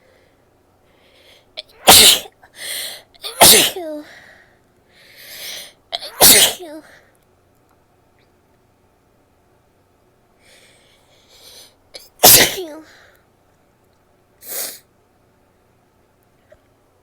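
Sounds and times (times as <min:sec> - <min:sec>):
woman sneezing: 0:01.6 - 0:02.4, 0:03.3 - 0:04.1, 0:06.0 - 0:06.9, 0:12.2 - 0:13.0.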